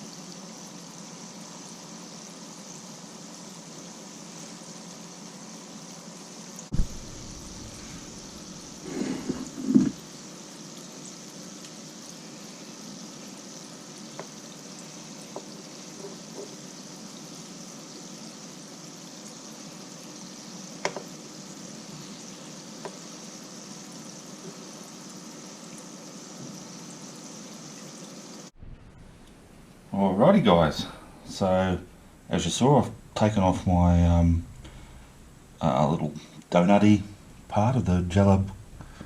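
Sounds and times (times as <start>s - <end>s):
dough deep-frying in oil: 0.0s - 29.9s
knock: 9.3s - 10.0s.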